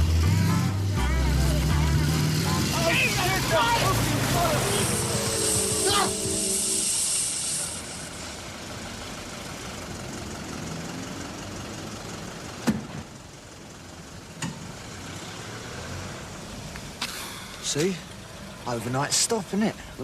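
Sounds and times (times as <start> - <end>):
vehicle engine running: 0.0 - 15.4.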